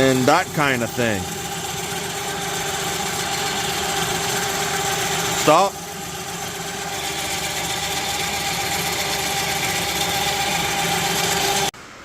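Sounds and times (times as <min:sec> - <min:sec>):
electric winch humming: 0:00.0 - 0:11.8.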